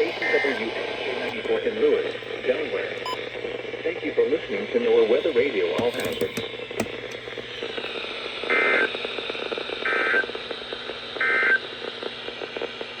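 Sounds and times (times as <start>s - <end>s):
radio hiss: 0.0s - 6.2s.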